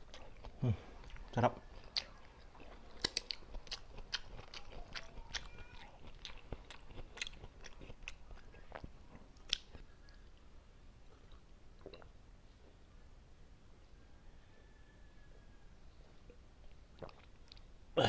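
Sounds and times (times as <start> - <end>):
chewing crunchy fruit: 0.0 - 10.5, 16.0 - 17.7
wet mouth clicks: 3.0 - 5.4.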